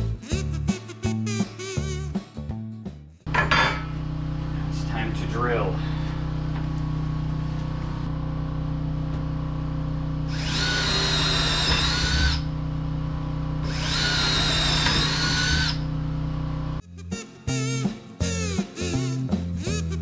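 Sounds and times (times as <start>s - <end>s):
music: 0.0s - 3.3s, 16.8s - 20.0s
steady low hum: 3.3s - 17.1s
power drill drilling into wood: 10.3s - 12.5s, 13.7s - 15.8s.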